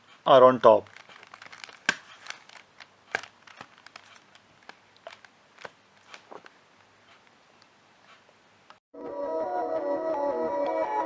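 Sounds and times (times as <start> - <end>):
puzzle cube clicking: 0.9 - 6.5.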